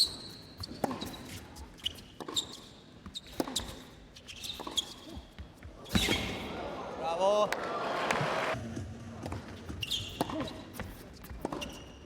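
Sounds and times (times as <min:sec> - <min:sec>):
tennis shoes squeaking on court: 0:00.0 - 0:06.5, 0:09.3 - 0:12.0.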